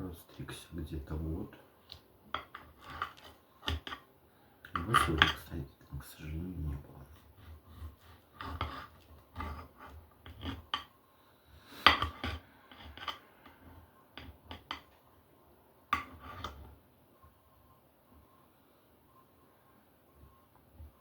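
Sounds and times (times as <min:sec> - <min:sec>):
cutlery clinking and scraping plate: 0:08.4 - 0:10.9, 0:11.8 - 0:13.2, 0:16.0 - 0:16.6.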